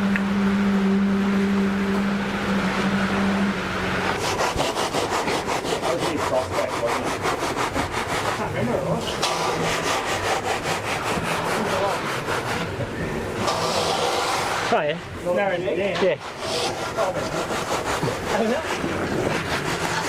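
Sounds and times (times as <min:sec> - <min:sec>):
steady machine hum: 0:00.0 - 0:20.0
hand tool scraping wet concrete: 0:04.1 - 0:12.7, 0:13.4 - 0:14.9, 0:15.9 - 0:20.0.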